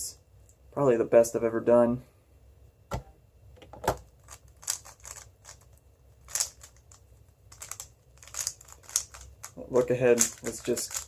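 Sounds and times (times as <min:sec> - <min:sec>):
puzzle cube plastic clicks: 0:04.0 - 0:11.0.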